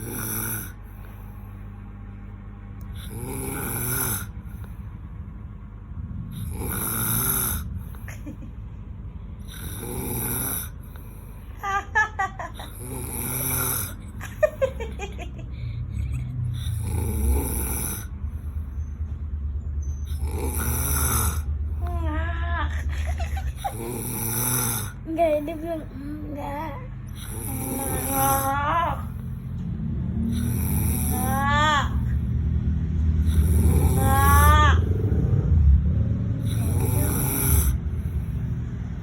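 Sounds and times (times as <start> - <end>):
man snoring heavily: 0.0 - 1.3, 2.9 - 4.7, 6.2 - 8.1, 9.4 - 11.4, 12.6 - 14.1, 16.4 - 18.5, 20.1 - 21.6, 23.5 - 25.1, 27.1 - 29.4, 30.1 - 32.4, 33.1 - 35.5, 36.2 - 38.7.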